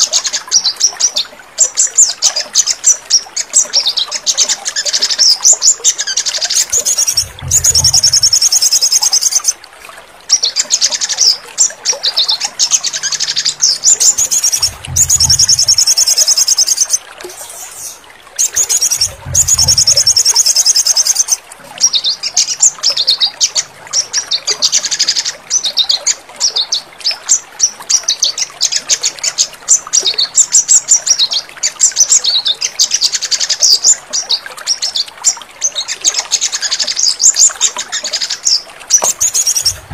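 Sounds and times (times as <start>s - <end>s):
bird twittering trills: 3.6s - 9.6s, 10.5s - 26.8s, 38.1s - 39.9s.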